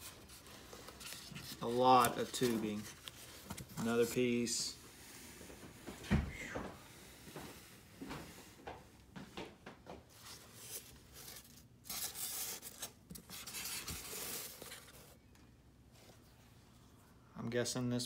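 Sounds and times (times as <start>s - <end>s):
packaging rustling and scraping: 0.0s - 4.2s, 10.1s - 15.2s.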